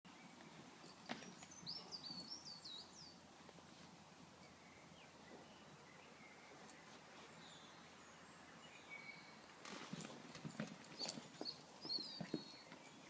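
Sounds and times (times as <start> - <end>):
small bird singing: 0.1 - 3.2, 4.4 - 9.5, 10.9 - 13.0.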